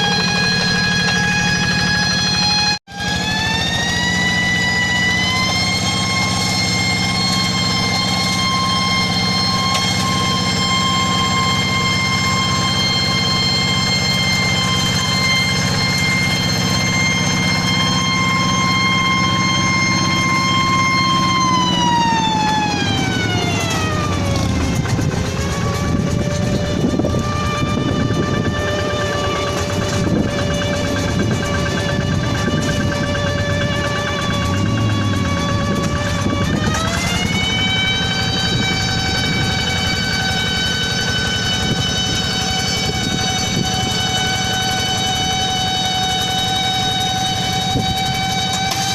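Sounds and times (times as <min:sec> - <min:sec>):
high-pitched tractor whine: 0:00.0 - 0:48.9
tractor engine hum: 0:00.0 - 0:48.9.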